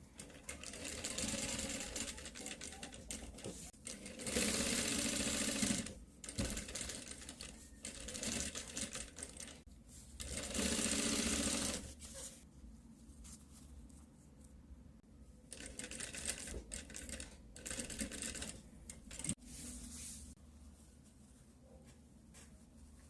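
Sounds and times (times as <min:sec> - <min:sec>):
sewing machine stitching: 0:00.2 - 0:09.6, 0:10.2 - 0:11.9.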